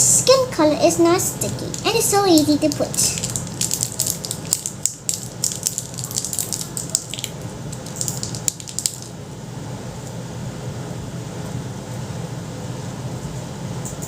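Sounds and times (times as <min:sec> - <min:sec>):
steady low hum: 0:00.0 - 0:14.0
foam clay crackling by hand: 0:01.0 - 0:09.2.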